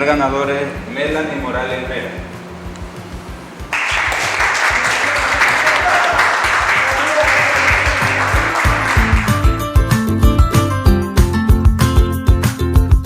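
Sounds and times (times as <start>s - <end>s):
applause: 3.7s - 9.8s
background music with steady beat: 7.6s - 13.0s
guitar music: 8.0s - 10.9s.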